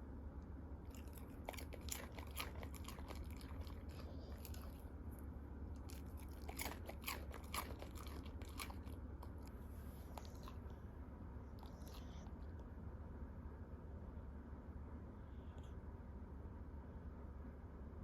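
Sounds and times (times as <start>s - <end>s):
dog crunching food: 0.9s - 10.7s, 11.6s - 12.3s.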